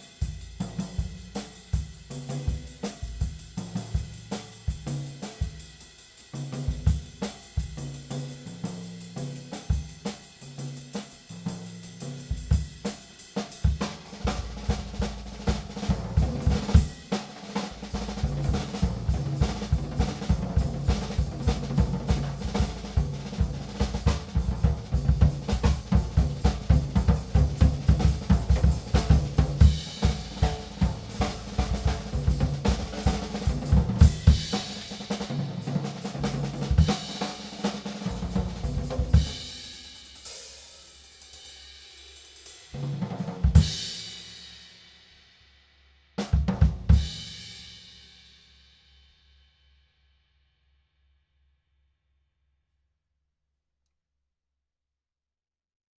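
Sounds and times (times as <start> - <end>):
drum kit groove with fills: 0.0 - 44.8, 46.2 - 48.1.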